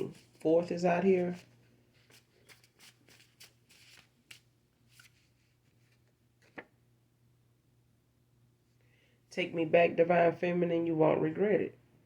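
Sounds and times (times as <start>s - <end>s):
cards flicking and rustling: 0.0s - 6.8s.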